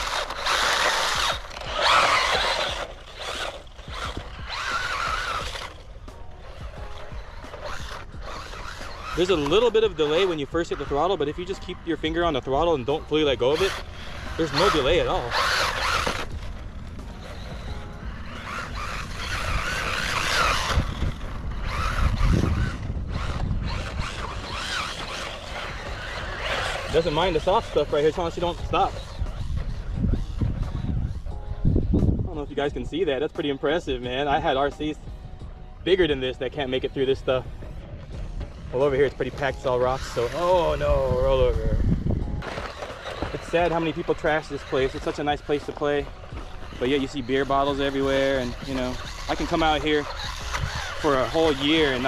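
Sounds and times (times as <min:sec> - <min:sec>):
rc truck motor whining: 0:00.0 - 0:31.4, 0:39.1 - 0:52.0
tyres churning in sand: 0:00.0 - 0:31.4, 0:38.5 - 0:52.0.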